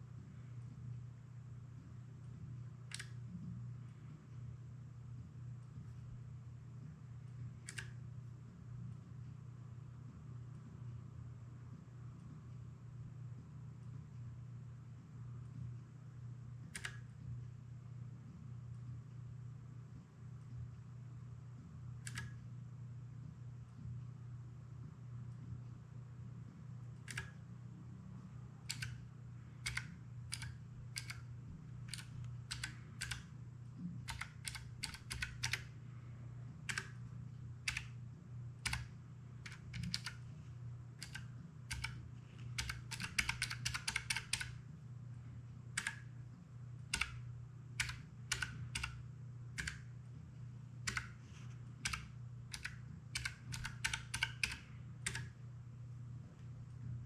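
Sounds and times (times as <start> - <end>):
mechanical keyboard typing: 2.9 - 3.1, 16.8 - 17.1, 22.0 - 22.4, 28.7 - 29.0, 29.6 - 31.2, 31.9 - 33.3, 34.1 - 35.7, 36.7 - 37.0, 37.6 - 38.0, 38.6 - 40.2, 41.0 - 42.0, 42.6 - 44.6, 45.8 - 46.0, 46.9 - 47.2, 47.8 - 49.0, 49.6 - 49.8, 50.8 - 51.2, 51.8 - 55.4.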